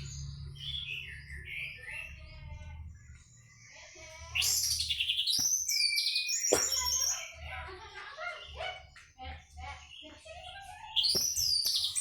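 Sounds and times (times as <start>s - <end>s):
thrush singing whistled phrases: 4.4s - 7.3s, 10.9s - 12.0s.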